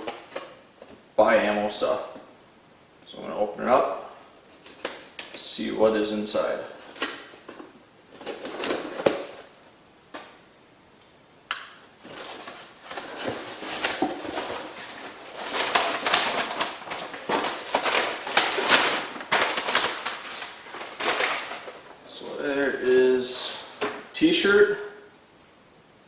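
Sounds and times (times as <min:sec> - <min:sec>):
packaging rustling and crinkling: 0:00.0 - 0:01.1, 0:04.5 - 0:05.4, 0:06.4 - 0:09.6, 0:12.0 - 0:24.2.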